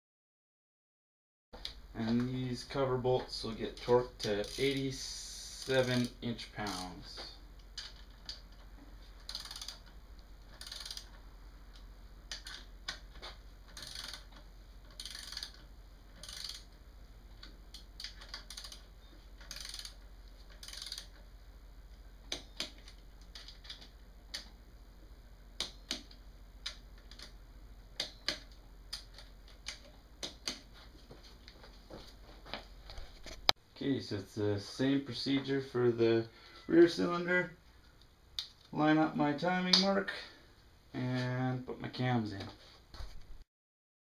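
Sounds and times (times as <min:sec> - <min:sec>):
torque wrench clicks: 0:03.8 - 0:06.9, 0:09.2 - 0:09.9, 0:10.5 - 0:11.2, 0:12.3 - 0:13.0, 0:13.7 - 0:16.7, 0:17.4 - 0:21.2
hand ratchet rasping: 0:03.8 - 0:07.0, 0:07.6 - 0:16.8, 0:17.4 - 0:21.2.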